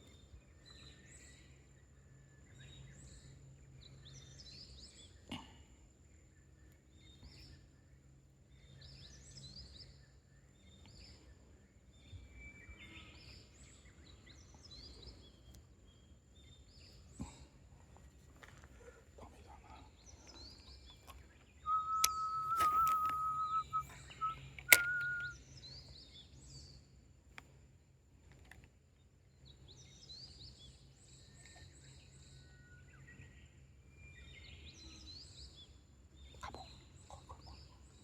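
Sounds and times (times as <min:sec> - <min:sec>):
small birds chirping: 0:00.0 - 0:38.0
sharp clicks: 0:21.7 - 0:25.3
high whistling tone: 0:21.7 - 0:25.4.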